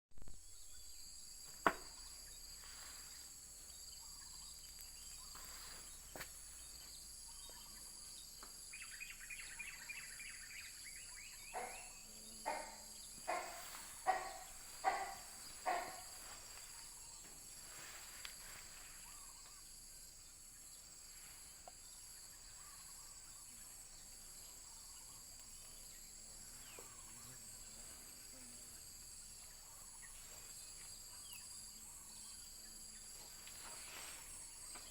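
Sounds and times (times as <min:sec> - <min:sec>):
insect chorus: 0:00.2 - 0:34.9
loud animal calls: 0:11.5 - 0:16.4.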